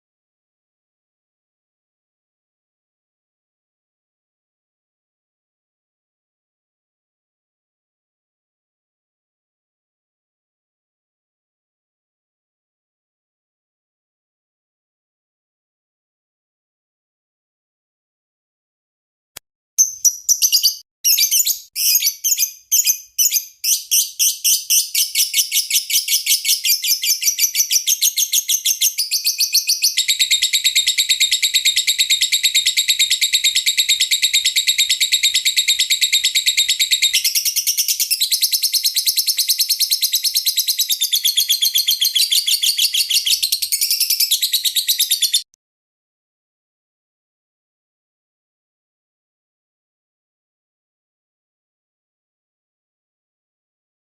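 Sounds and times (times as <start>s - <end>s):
lovebird chirping and trilling: 19.8s - 45.5s.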